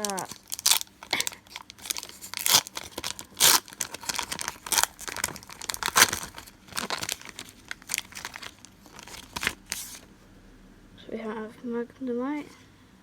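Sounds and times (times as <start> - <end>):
foil wrapper tearing and crinkling: 0.0 - 10.1.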